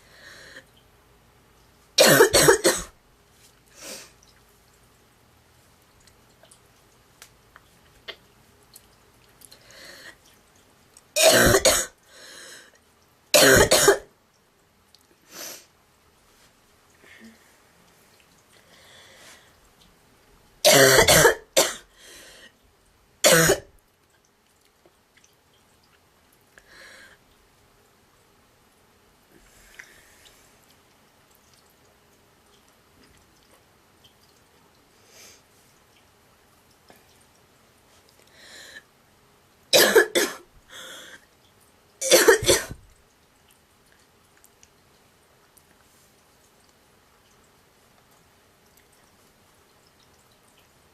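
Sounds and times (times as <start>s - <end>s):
girl honking cough: 2.0s - 2.9s, 42.0s - 42.8s
girl's honking cough: 42.0s - 42.8s.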